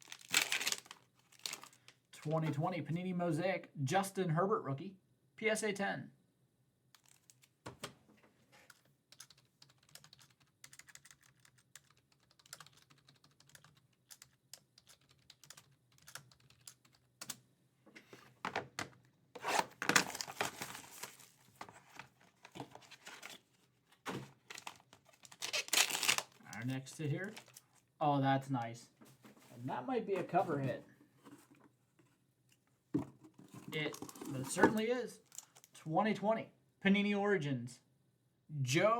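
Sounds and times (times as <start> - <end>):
box ripping and rustling: 0.0 - 1.7, 19.4 - 23.5, 24.1 - 26.4.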